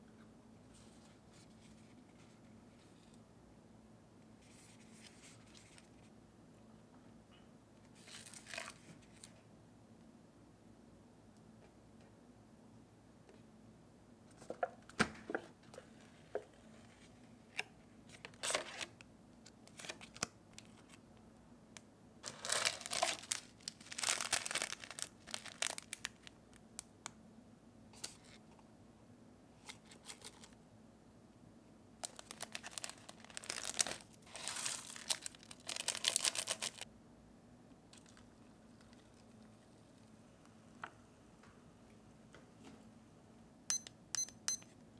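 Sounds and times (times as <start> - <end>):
plastic packaging crinkling and tearing: 22.2 - 26.4, 32.0 - 36.9.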